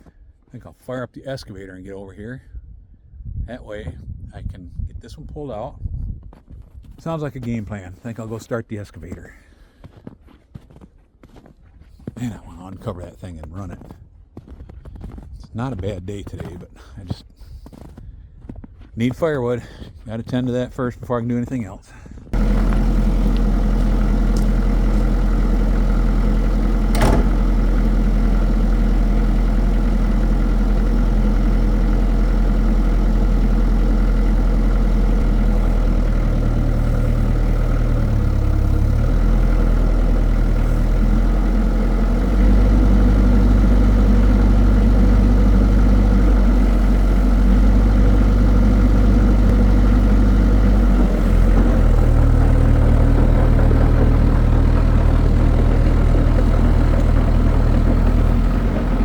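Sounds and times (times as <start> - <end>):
excavator diesel engine idling: 22.4 - 59.0.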